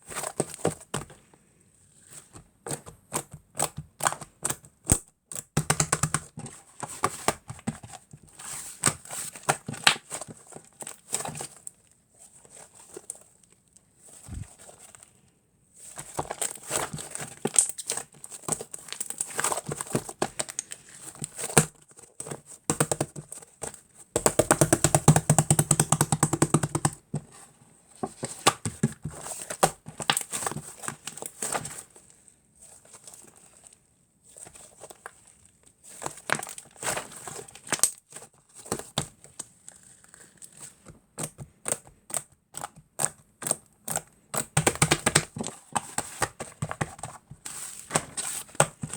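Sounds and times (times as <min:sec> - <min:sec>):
slime clicking and crackling: 0:16.3 - 0:21.7.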